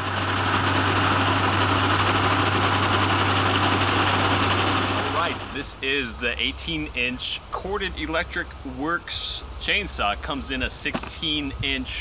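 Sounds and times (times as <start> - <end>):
electric chainsaw running: 0.0 - 7.0.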